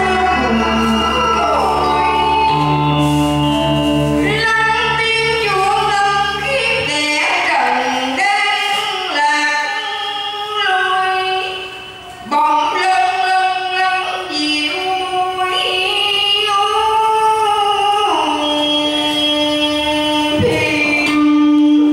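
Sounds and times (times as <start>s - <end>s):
voices singing: 0.0s - 10.7s
musical accompaniment: 0.0s - 16.0s, 16.7s - 21.9s.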